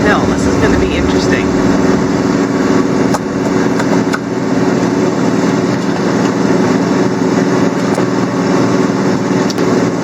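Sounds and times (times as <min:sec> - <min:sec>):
truck engine labouring uphill: 0:00.0 - 0:10.0.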